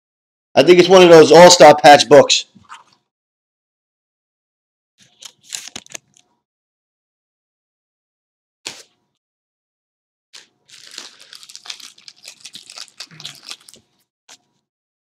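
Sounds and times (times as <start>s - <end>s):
plastic packaging crinkling: 5.1s - 6.2s, 10.4s - 14.4s.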